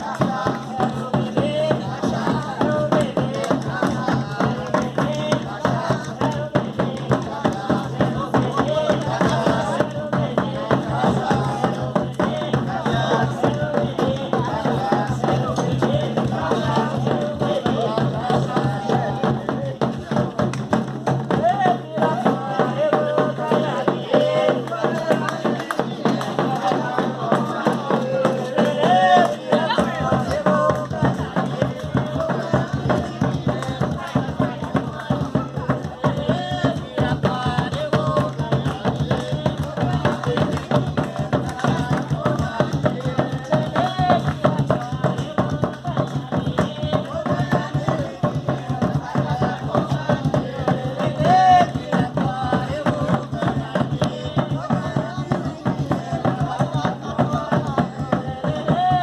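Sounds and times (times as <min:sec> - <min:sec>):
percussion beat: 0:00.0 - 0:59.0
voices singing: 0:00.0 - 0:59.0.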